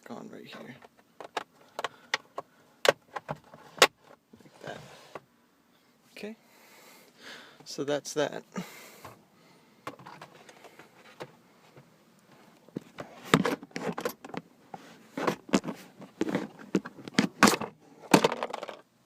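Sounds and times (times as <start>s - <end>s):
clicks knocks and rustles: 15.1s - 18.8s.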